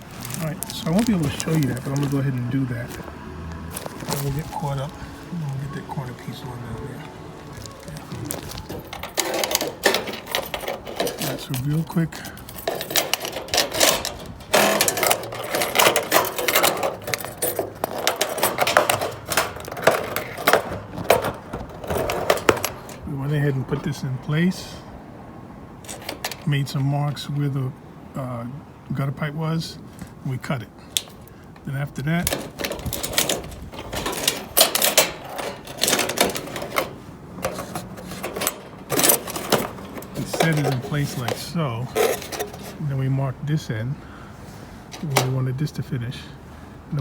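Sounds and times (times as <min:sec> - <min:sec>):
metal gutter guard clattering: 0:00.0 - 0:27.2, 0:30.0 - 0:47.0
metal panel clicking and rattling: 0:07.6 - 0:23.1, 0:25.8 - 0:26.5, 0:30.9 - 0:42.8, 0:44.9 - 0:45.4.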